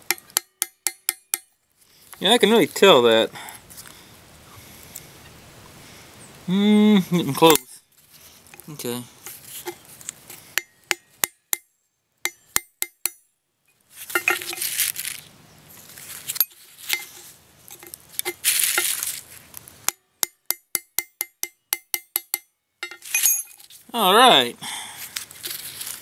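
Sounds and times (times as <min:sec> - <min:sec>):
hammer striking metal chisel: 0:00.0 - 0:01.6, 0:10.6 - 0:13.3, 0:14.1 - 0:14.6, 0:19.9 - 0:23.6
rough noise: 0:13.7 - 0:19.9.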